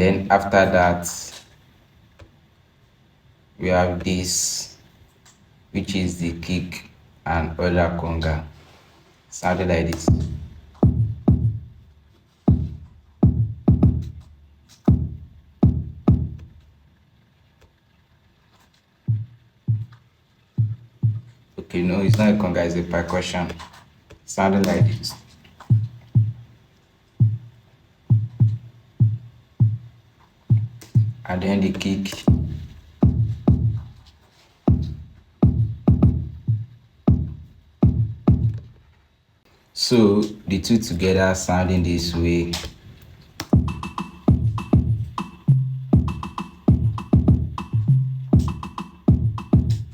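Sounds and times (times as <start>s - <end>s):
programmed percussion loop: 9.8s - 16.7s, 19.0s - 21.4s, 24.4s - 26.5s, 27.2s - 34.1s, 34.7s - 38.7s, 43.4s - 49.9s
electronic kick drum: 9.9s - 16.6s, 19.0s - 21.4s, 24.6s - 26.5s, 27.2s - 31.3s, 32.1s - 34.0s, 34.7s - 38.8s, 43.4s - 49.9s.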